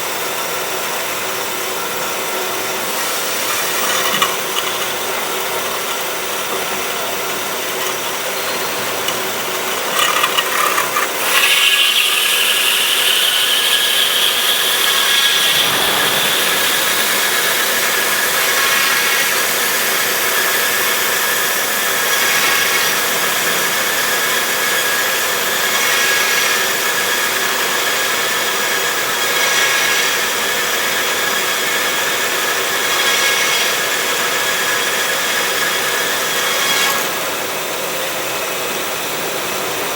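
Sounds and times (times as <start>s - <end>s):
band saw cutting metal: 1.3s - 37.5s
high whine climbing in pitch: 12.8s - 25.7s.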